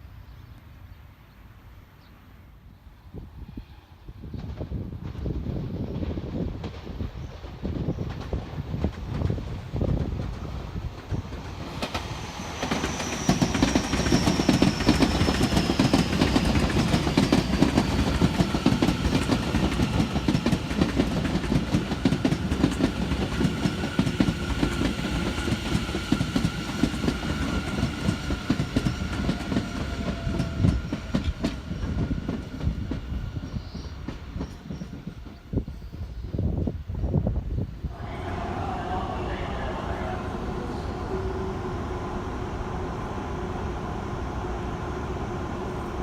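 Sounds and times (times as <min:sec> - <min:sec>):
train wheels clattering: 0:04.3 - 0:35.7.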